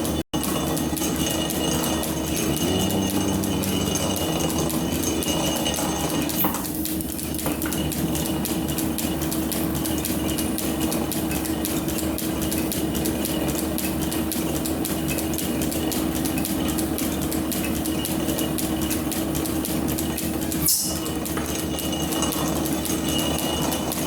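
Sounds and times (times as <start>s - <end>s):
metal planer drive hum: 0.0s - 8.3s.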